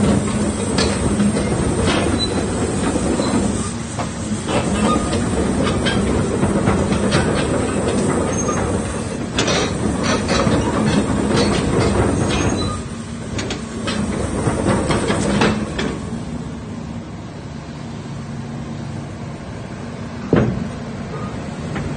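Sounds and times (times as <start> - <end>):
excavator diesel engine running: 0.0 - 21.9
metallic clanks and knocks: 4.5 - 12.8.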